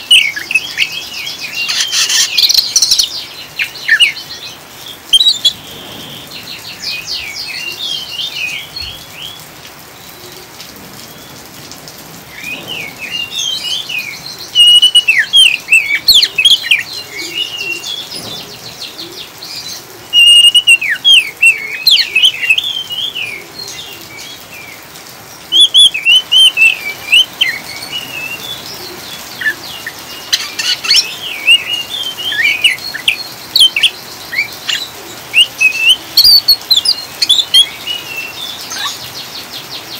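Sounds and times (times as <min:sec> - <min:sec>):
bird chattering song: 0:00.0 - 0:04.5, 0:05.1 - 0:06.8, 0:14.5 - 0:19.4, 0:20.2 - 0:22.7, 0:28.7 - 0:39.9
rain hiss: 0:00.0 - 0:39.9.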